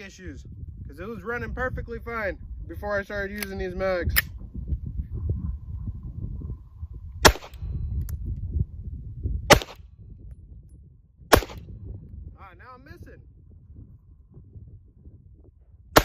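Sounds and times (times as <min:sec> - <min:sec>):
wind rumble on microphone: 0:00.0 - 0:16.0
pistol shots: 0:07.2 - 0:07.6, 0:09.5 - 0:09.8, 0:11.3 - 0:11.6.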